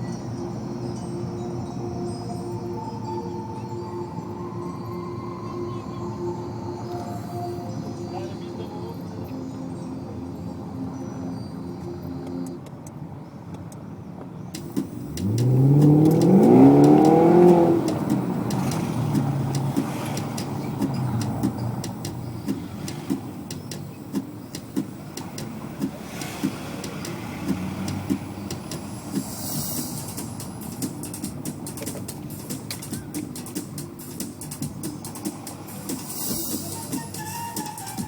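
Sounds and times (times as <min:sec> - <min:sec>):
sharp clicks: 0:14.6 - 0:29.3, 0:30.1 - 0:35.6
car engine revving: 0:14.6 - 0:38.0.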